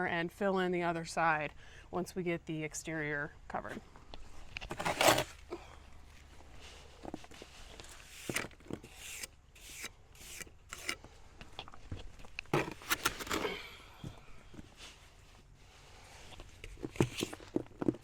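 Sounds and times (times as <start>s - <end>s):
trowel scraping mortar: 4.6s - 5.4s, 7.8s - 11.0s.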